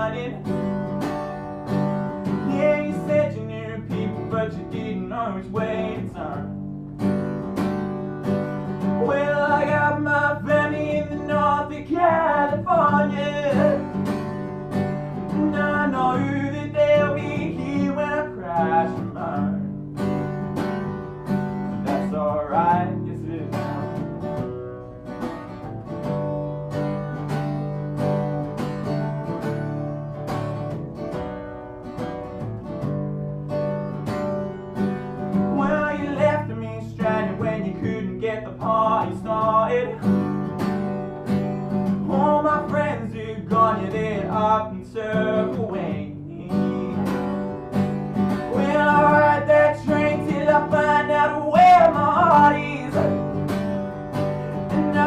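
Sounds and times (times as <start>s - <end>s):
acoustic guitar strummed: 0.0s - 55.0s
person singing wordless melody: 2.3s - 6.5s, 9.0s - 14.0s, 15.2s - 19.8s, 35.5s - 40.1s, 42.0s - 47.5s, 48.5s - 53.4s.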